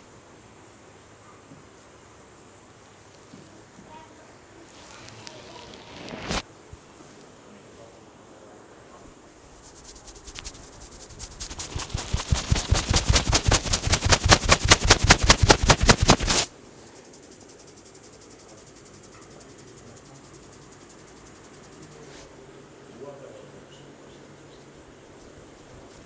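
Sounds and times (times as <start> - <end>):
hands slap-tapping on head: 11.4 - 16.5.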